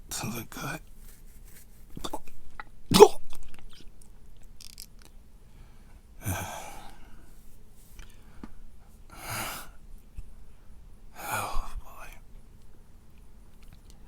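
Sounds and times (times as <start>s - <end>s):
man breathing heavily: 5.5s - 7.4s.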